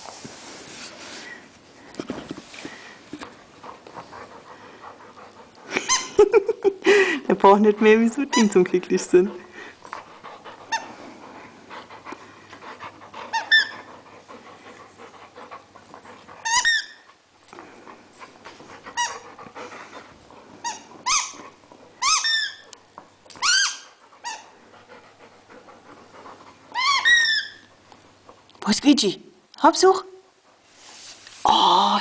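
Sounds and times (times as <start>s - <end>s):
dog chewing squeaky toy: 8.2s - 8.6s, 10.7s - 10.9s, 13.2s - 13.9s, 16.4s - 17.2s, 18.8s - 19.3s, 20.6s - 22.7s, 23.3s - 24.6s, 26.7s - 27.7s.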